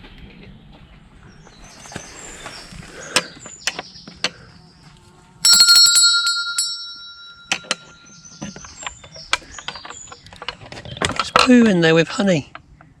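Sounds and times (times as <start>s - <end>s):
small metal bell ringing: 5.4s - 8.9s.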